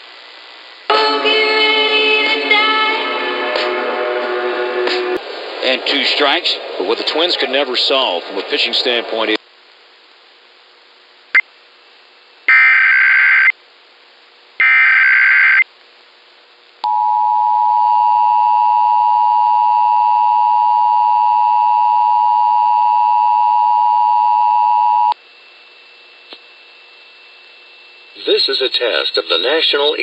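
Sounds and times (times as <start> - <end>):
data bursts: 12.5 - 13.5, 14.6 - 15.6
click: 26.3 - 26.5.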